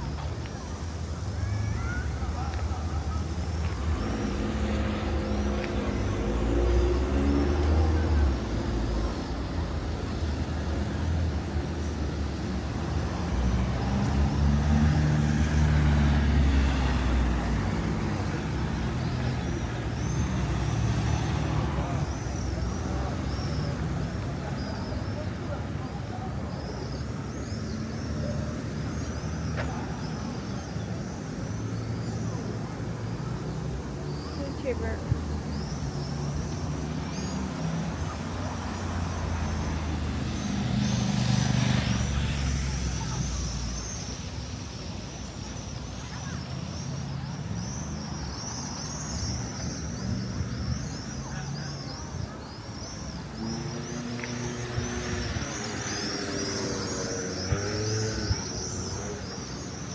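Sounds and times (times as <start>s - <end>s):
cicadas chirping: 0.0s - 59.9s
street traffic rumble: 0.0s - 59.9s.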